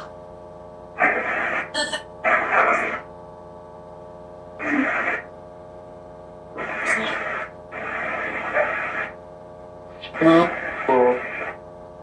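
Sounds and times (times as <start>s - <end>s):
steady speaker hum: 0.0s - 12.0s
garbled radio-like noise bursts: 1.0s - 3.1s, 4.6s - 5.3s, 6.6s - 9.2s, 10.0s - 11.6s.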